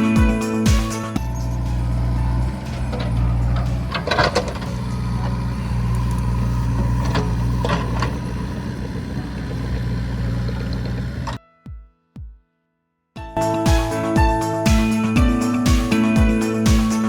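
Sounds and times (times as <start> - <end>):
tractor engine running: 0.0 - 11.4.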